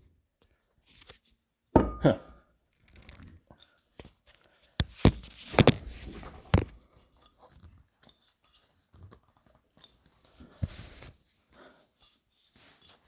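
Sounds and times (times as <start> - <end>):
small handling noises: 0.4 - 13.0
bottle knocks and clicks: 1.8 - 2.4.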